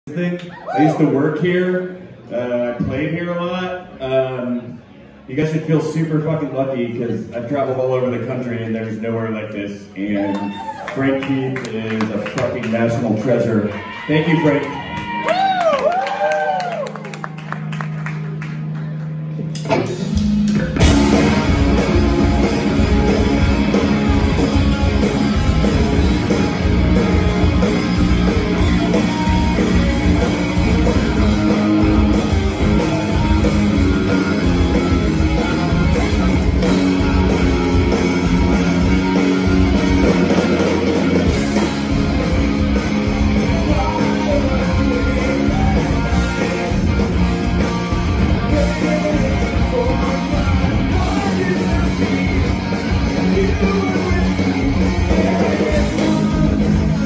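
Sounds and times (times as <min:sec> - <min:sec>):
rock band playing live: 0:16.9 - 0:57.0.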